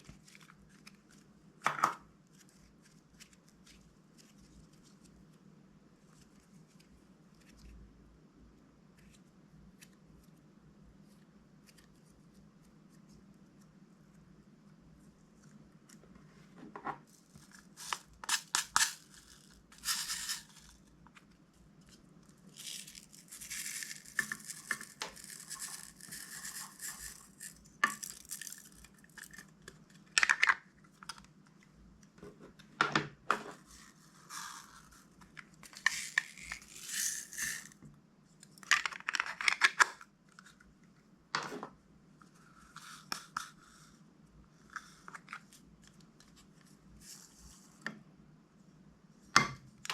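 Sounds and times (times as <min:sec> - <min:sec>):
plastic packaging crinkling: 0:17.3 - 0:21.0, 0:21.8 - 0:31.0, 0:34.3 - 0:37.8.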